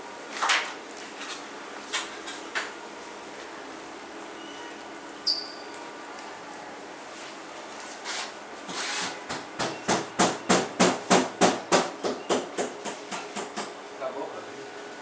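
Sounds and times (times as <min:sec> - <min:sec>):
sharp knocks: 0:09.3 - 0:13.7.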